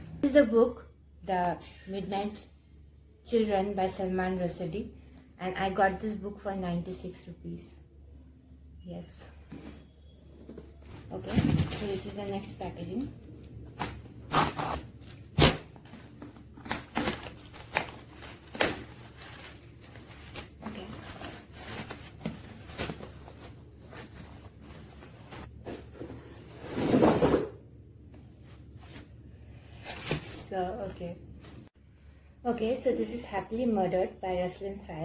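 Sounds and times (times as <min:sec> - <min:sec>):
packaging rustling: 0:10.4 - 0:25.5.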